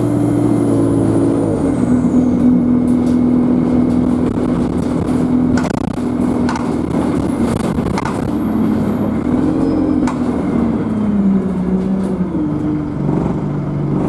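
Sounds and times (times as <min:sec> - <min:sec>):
bus engine running: 0:00.0 - 0:14.0
sharp knocks: 0:04.7 - 0:08.3.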